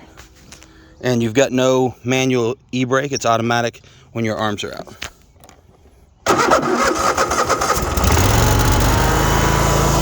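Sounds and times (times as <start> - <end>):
mower engine starting and running: 6.3 - 10.0.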